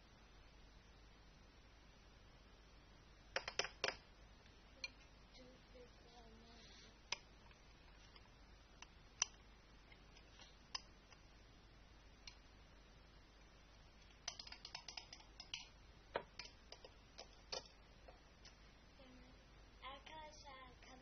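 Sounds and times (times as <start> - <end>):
sharp clicks and taps: 3.4 - 4.0, 7.1 - 11.2, 12.2 - 12.4, 14.0 - 18.6.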